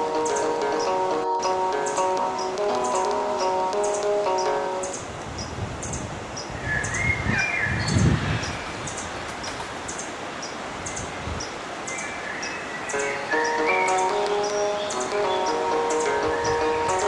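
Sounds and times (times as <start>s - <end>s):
high bird chirps: 1.8s - 17.0s
lower gliding bird call: 11.9s - 17.0s.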